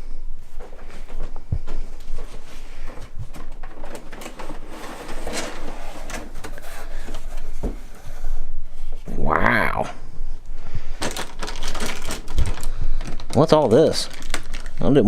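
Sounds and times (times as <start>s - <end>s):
cardboard and packing rustling: 0.4s - 9.1s, 10.9s - 15.0s.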